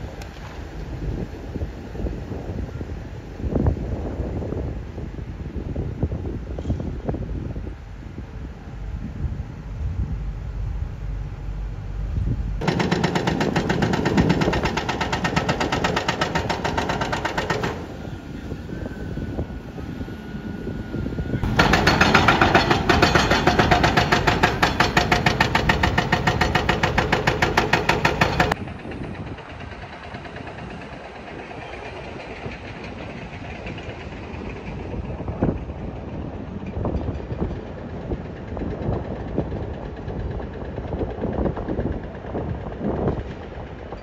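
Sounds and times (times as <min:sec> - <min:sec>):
machine engines running: 0:11.1 - 0:44.0
hydraulic breaker hammering concrete: 0:12.6 - 0:17.9, 0:21.4 - 0:28.6.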